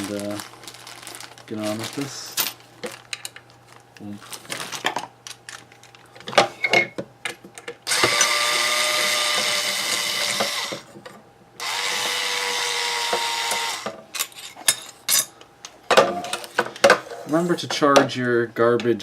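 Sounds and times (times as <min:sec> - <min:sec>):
cordless screwdriver running: 0:07.9 - 0:10.8, 0:11.6 - 0:13.9.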